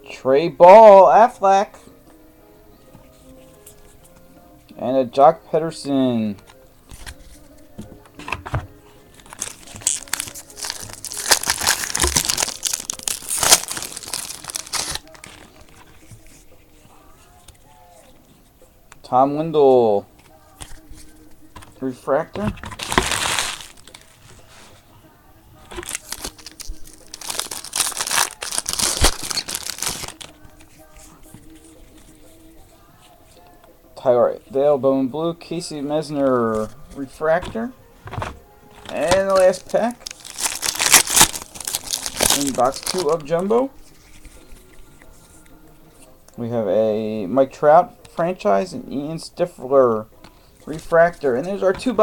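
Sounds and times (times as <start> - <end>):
foil wrapper crinkling: 9.2 - 16.2, 22.7 - 24.3, 25.7 - 31.0, 38.7 - 44.4.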